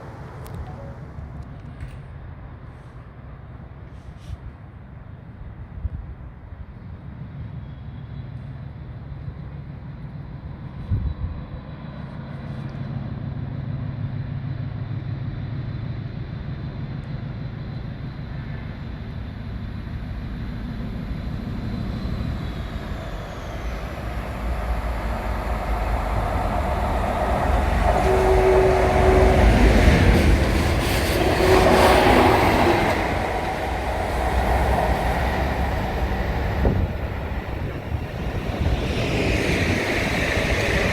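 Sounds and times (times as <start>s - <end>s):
diesel train passing: 0.0s - 40.9s
train wheel and wagon noise: 0.0s - 40.9s.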